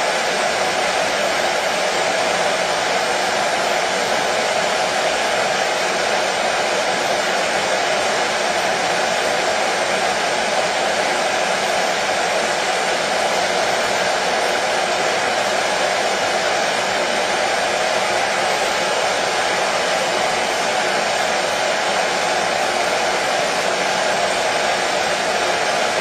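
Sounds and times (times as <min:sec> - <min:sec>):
hair dryer running: 0:00.0 - 0:26.0.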